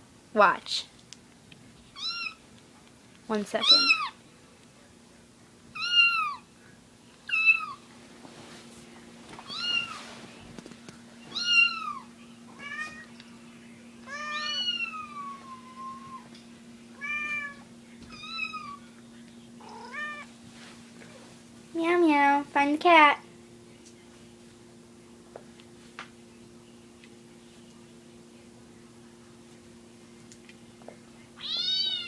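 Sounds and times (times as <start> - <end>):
faint steady hum: 0.0 - 32.0
cat meowing: 2.0 - 2.4, 5.8 - 6.4, 11.3 - 13.1, 14.1 - 16.3, 17.0 - 17.6, 19.6 - 20.3, 31.4 - 32.0.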